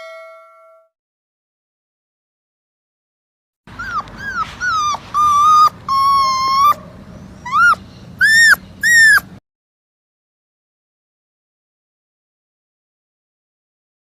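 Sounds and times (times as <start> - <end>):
puppy whimpering and whining: 3.7 - 9.4.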